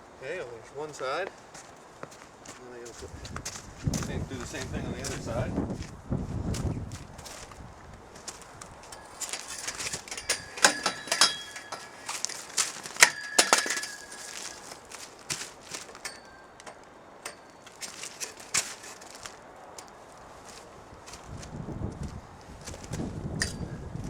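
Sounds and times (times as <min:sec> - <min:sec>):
metal poles clanking: 0:08.2 - 0:21.2, 0:23.4 - 0:23.8.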